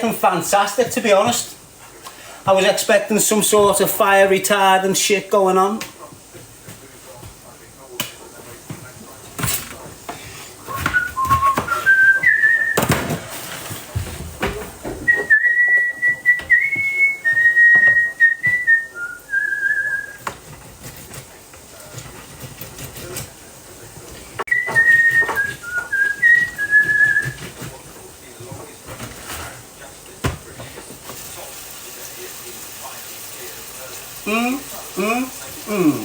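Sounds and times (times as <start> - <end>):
person whistling a tune: 10.7 - 12.9, 15.1 - 20.2, 24.5 - 27.4.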